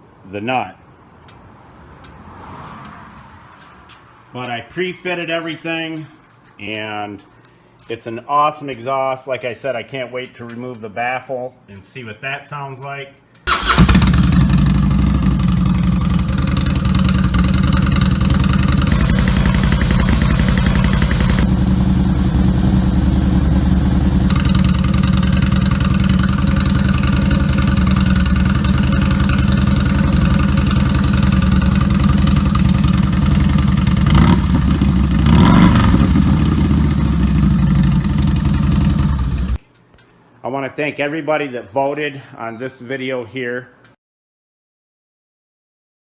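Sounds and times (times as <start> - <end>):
motorcycle engine idling: 13.5 - 39.6.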